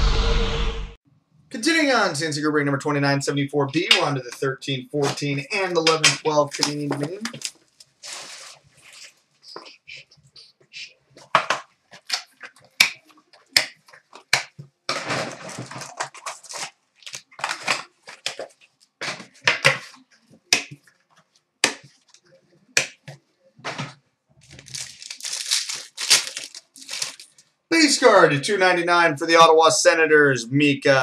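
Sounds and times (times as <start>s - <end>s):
packaging crinkling and tearing: 6.6s - 8.6s, 15.0s - 18.9s, 24.4s - 27.4s.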